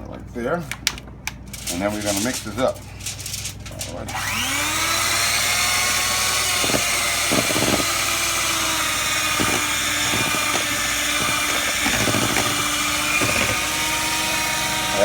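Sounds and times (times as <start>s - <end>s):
electric hand mixer running: 4.1s - 15.0s.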